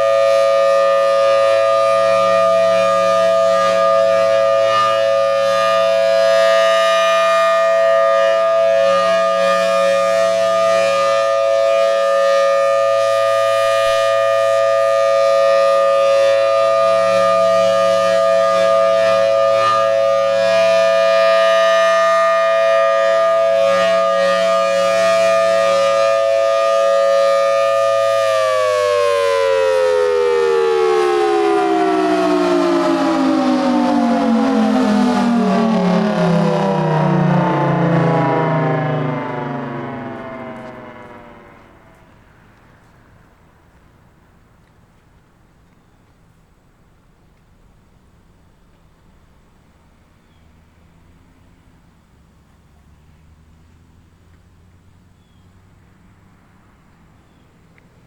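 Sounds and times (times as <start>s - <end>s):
warning siren winding down: 0.0s - 43.5s.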